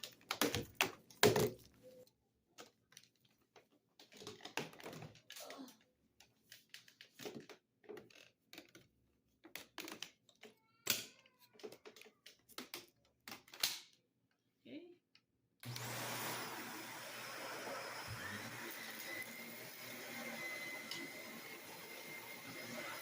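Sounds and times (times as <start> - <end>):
plastic parts clicking and knocking: 0.0 - 1.8, 2.6 - 14.4.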